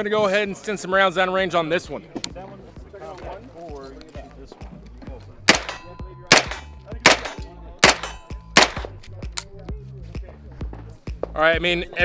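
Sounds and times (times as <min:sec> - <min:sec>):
pistol shots: 0:05.5 - 0:08.9.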